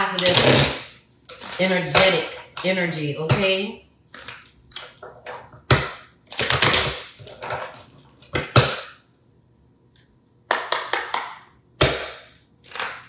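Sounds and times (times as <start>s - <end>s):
cards slapping and tapping: 10.5s - 13.0s.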